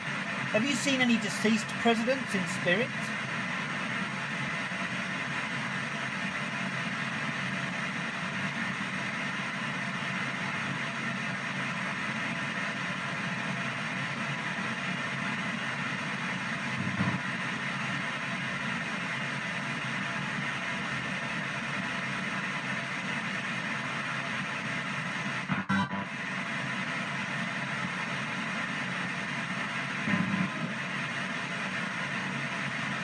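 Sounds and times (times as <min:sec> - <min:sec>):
radio static and chopped noise: 0:00.6 - 0:03.1, 0:16.7 - 0:17.3, 0:29.8 - 0:32.2.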